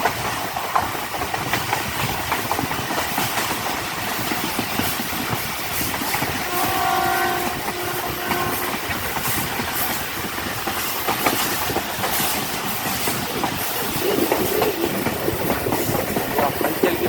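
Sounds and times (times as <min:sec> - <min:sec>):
passenger train rumbling: 0:00.0 - 0:17.0
wheels clacking over rail joints: 0:00.0 - 0:17.0
train horn: 0:06.3 - 0:09.3.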